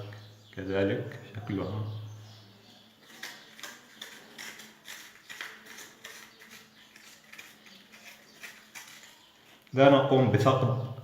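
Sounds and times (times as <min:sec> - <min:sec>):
knife scraping onion: 0:03.0 - 0:09.7.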